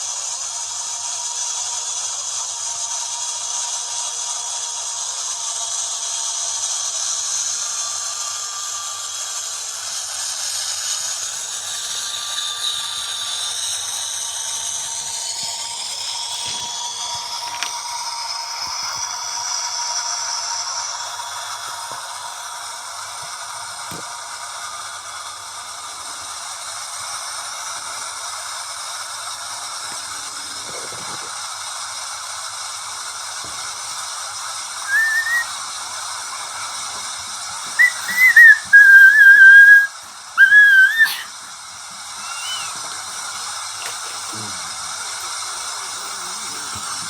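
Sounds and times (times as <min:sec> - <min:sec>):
steady hiss: 0:00.0 - 0:47.0
whistled notes: 0:34.8 - 0:41.5, 0:42.2 - 0:42.8.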